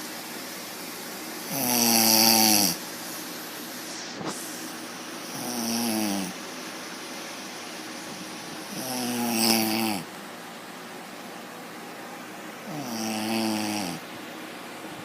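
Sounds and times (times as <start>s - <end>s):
electric fan hiss: 0.0s - 15.0s
woman snoring: 1.5s - 2.8s, 5.3s - 6.4s, 8.7s - 10.1s, 12.7s - 14.0s.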